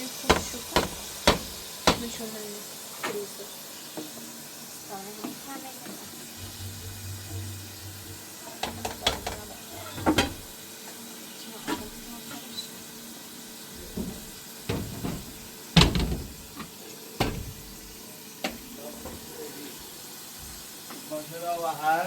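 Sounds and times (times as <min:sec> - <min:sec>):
steady hiss: 0:00.0 - 0:22.0
sharp knocks and clicks: 0:00.3 - 0:02.1, 0:06.4 - 0:10.5.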